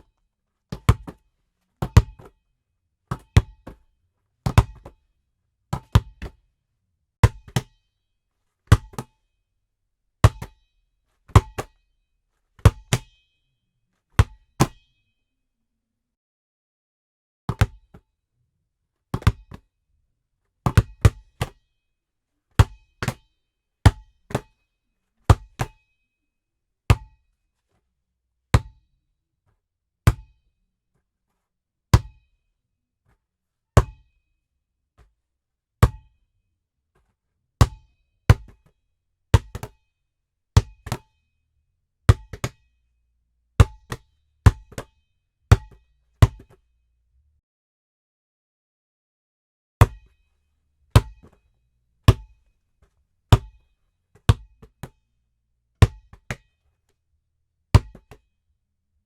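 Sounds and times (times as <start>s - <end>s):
basketball bouncing on hard floor: 0.7s - 1.2s, 1.8s - 2.3s, 3.1s - 3.8s, 4.5s - 4.9s, 5.8s - 6.4s, 8.7s - 9.1s, 11.4s - 11.7s, 14.2s - 14.4s, 17.5s - 18.0s, 19.2s - 19.6s, 20.7s - 21.6s, 25.3s - 25.8s, 26.9s - 27.1s, 28.6s - 28.8s, 30.1s - 30.3s, 32.0s - 32.2s, 37.6s - 38.6s, 39.4s - 39.8s, 42.1s - 42.6s, 43.6s - 44.9s, 45.5s - 46.6s, 49.8s - 50.0s, 51.0s - 51.4s, 53.3s - 53.6s, 54.2s - 54.9s, 55.8s - 56.4s, 57.8s - 58.2s.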